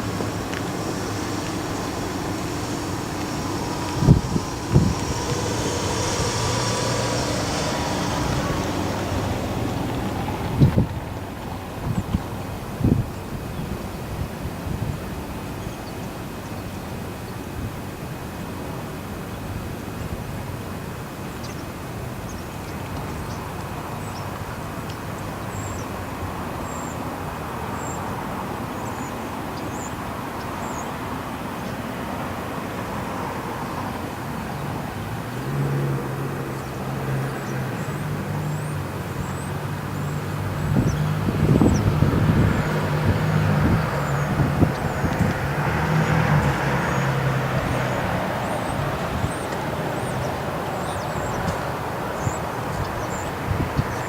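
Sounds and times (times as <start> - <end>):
small birds chirping: 0.0 - 10.9, 36.4 - 54.0
vehicle engine idling: 0.0 - 13.7
traffic noise: 0.0 - 54.0.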